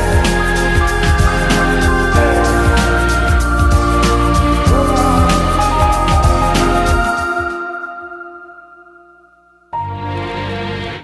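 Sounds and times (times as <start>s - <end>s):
background music with a beat: 0.0s - 7.7s.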